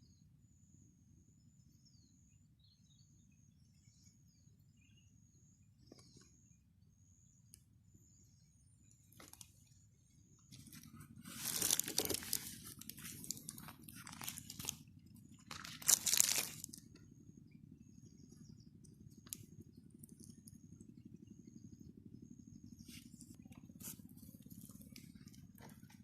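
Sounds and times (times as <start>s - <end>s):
crunching and crinkling handling: 9.1s - 9.6s, 10.5s - 17.0s.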